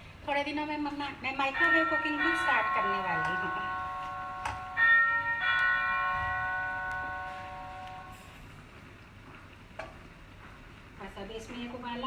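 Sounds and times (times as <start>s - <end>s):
bell-like chimes ringing: 1.6s - 8.2s.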